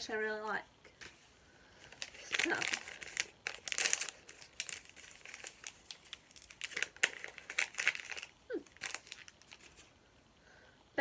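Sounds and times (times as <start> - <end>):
wrapping crinkling and tearing: 1.8 - 10.0.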